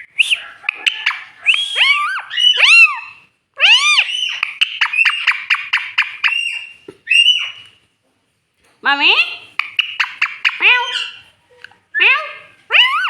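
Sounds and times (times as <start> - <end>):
parrot whistled squawks: 0.1 - 7.6, 12.0 - 13.0.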